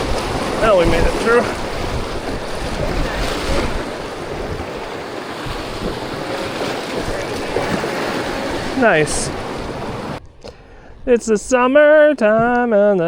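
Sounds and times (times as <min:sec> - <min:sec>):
river rapids rushing: 0:00.0 - 0:10.2
wind buffeting microphone: 0:00.0 - 0:12.6.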